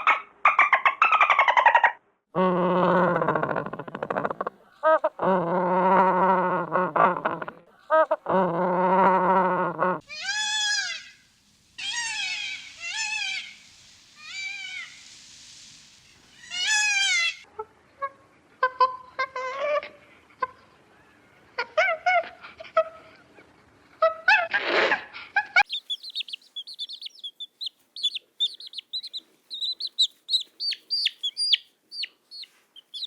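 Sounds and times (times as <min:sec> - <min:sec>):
cat chirping calls: 0:25.6 - 0:33.0.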